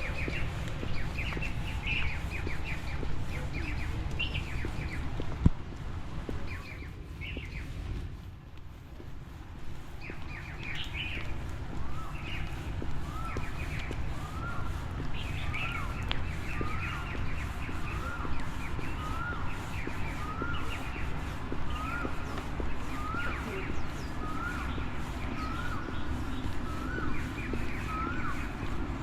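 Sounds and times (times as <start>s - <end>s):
bird calling: 10.0s - 29.0s
high bird chirps: 11.9s - 28.7s.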